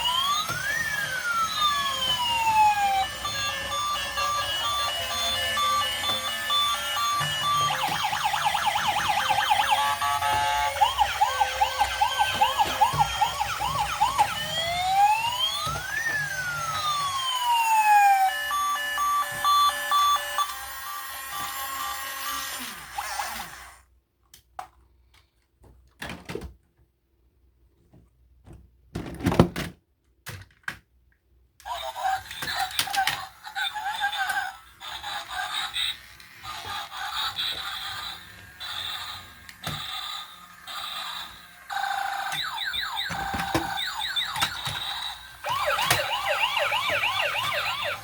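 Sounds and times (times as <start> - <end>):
toy electronic siren: 0.0 - 23.6, 31.7 - 48.0
beeping tones: 3.2 - 8.1, 18.5 - 20.5.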